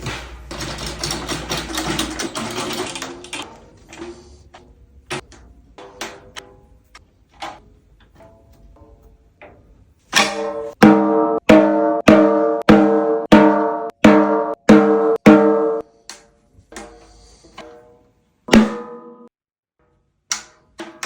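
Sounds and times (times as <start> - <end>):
snare drum hits: 10.2 - 15.8, 18.5 - 19.2.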